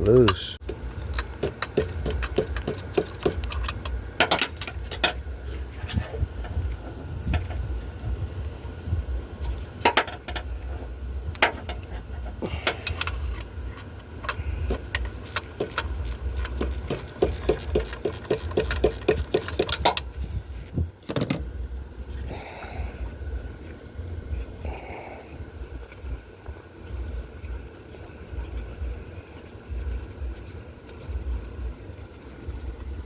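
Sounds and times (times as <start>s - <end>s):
ratcheting wrench clicking: 1.0s - 5.1s, 14.2s - 20.6s
wind rumble on microphone: 3.4s - 12.4s, 19.8s - 33.0s.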